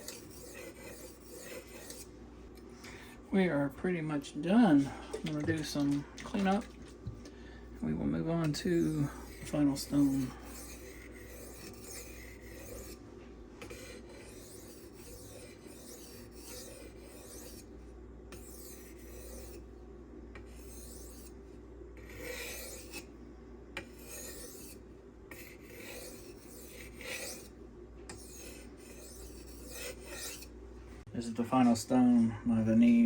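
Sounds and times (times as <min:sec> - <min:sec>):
knife scraping on sharpening stone: 0:00.0 - 0:02.1, 0:08.5 - 0:13.0, 0:13.6 - 0:17.7, 0:18.3 - 0:19.6, 0:20.5 - 0:21.3, 0:22.0 - 0:23.1, 0:23.8 - 0:27.5, 0:28.1 - 0:30.5.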